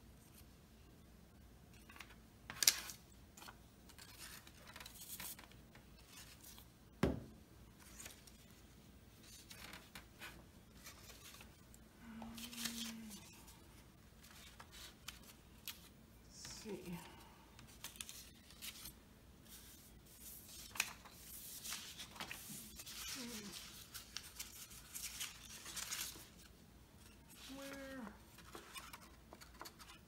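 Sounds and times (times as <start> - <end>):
knock on tabletop: 7.0 - 7.3
card stock rustling and scraping: 9.2 - 11.7, 17.7 - 30.0.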